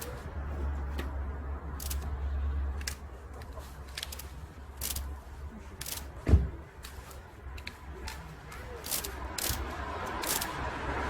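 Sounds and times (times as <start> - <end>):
small metal parts clicking: 8.8 - 10.6.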